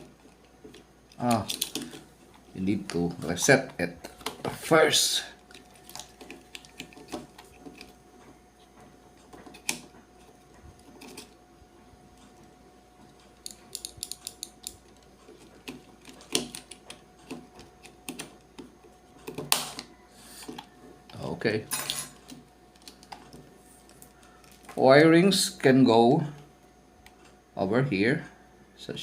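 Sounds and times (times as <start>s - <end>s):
circuit breaker parts clicking: 0.3s - 2.0s, 13.1s - 19.9s.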